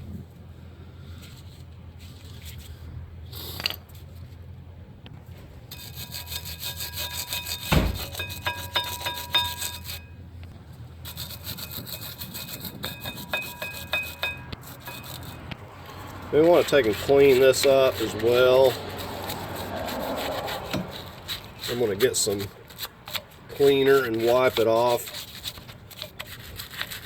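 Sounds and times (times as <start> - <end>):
hand scraping on metal brake parts: 5.7 - 10.2, 11.0 - 27.0
sharp knock: 7.6 - 8.6.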